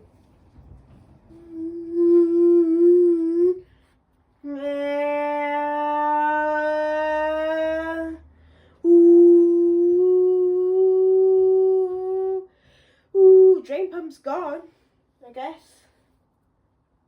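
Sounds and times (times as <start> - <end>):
washing machine whine: 0.0 - 3.6.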